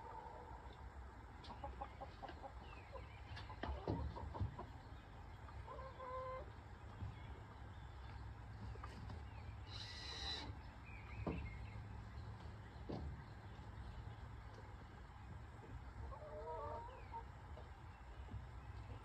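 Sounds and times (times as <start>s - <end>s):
chickens clucking: 0.0s - 19.0s.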